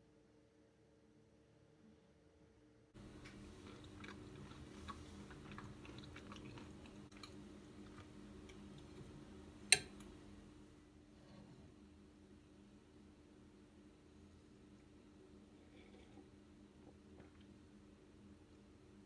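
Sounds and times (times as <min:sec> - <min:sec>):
person chewing food: 0:03.0 - 0:09.2.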